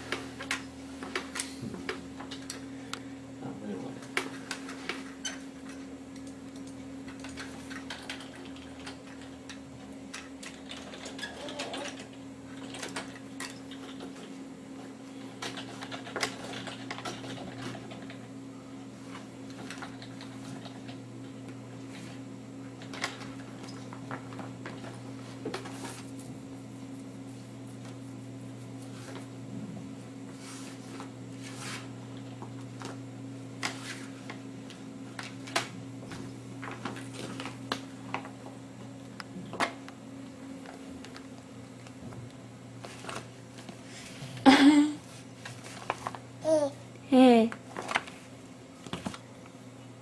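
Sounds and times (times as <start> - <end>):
steady low hum: 0.0 - 11.1, 11.9 - 50.0
plastic toys clicking and knocking: 10.1 - 14.1.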